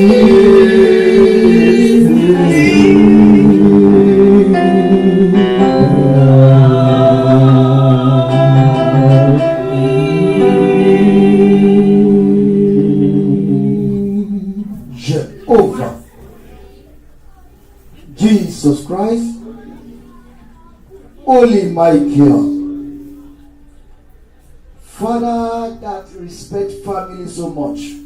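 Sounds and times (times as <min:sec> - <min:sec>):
instrumental accompaniment: 0:00.0 - 0:14.0
gospel singing: 0:00.0 - 0:16.1.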